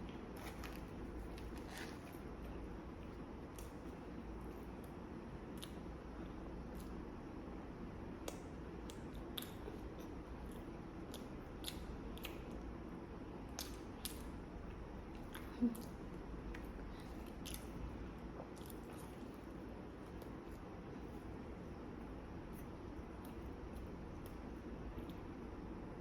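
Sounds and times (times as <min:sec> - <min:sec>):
person chewing food: 0:00.2 - 0:04.9, 0:15.2 - 0:21.4.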